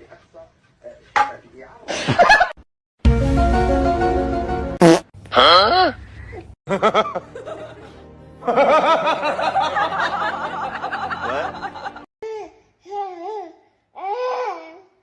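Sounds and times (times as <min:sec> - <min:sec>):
music: 0:03.0 - 0:04.8, 0:06.8 - 0:12.0
hearty laughter: 0:06.7 - 0:12.1.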